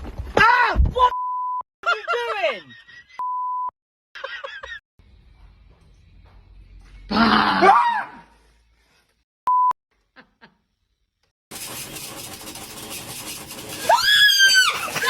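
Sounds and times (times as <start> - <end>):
person yelling in fright: 7.1 - 8.2.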